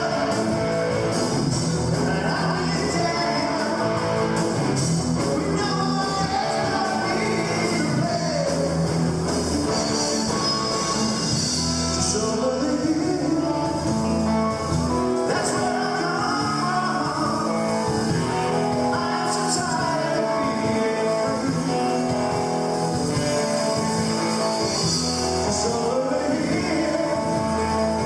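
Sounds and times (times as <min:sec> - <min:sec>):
person singing: 0:00.0 - 0:09.0, 0:09.6 - 0:14.3, 0:14.9 - 0:22.5, 0:23.1 - 0:28.0
electric guitar: 0:00.0 - 0:28.0
rock band playing live: 0:00.0 - 0:28.0.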